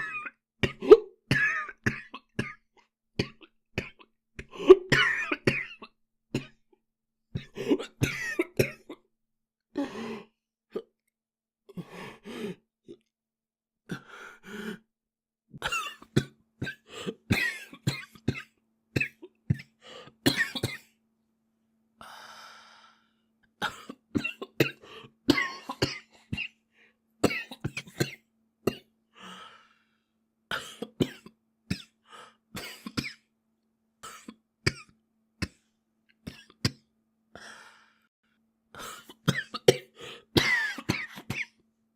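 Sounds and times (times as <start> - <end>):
boy coughing harshly: 0.0 - 2.6, 4.7 - 6.5, 7.4 - 9.0, 15.6 - 19.6, 20.3 - 20.9, 23.6 - 26.6, 27.2 - 28.9, 39.0 - 41.6
breathy sound: 29.2 - 30.1.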